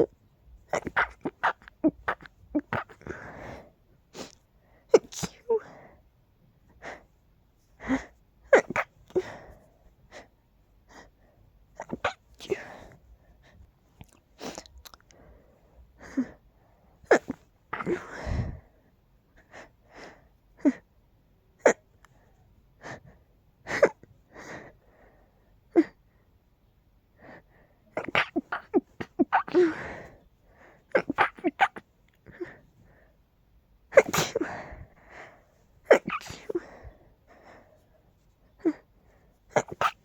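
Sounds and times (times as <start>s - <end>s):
person sneezing: 0.7s - 3.6s, 5.0s - 5.7s, 7.9s - 9.3s, 11.8s - 12.9s, 17.1s - 18.6s, 28.0s - 30.1s, 30.9s - 32.5s, 33.9s - 34.8s, 35.9s - 36.8s, 39.5s - 40.0s
quiet breaths: 3.0s - 21.1s, 21.9s - 28.0s, 28.9s - 31.0s, 32.0s - 39.6s.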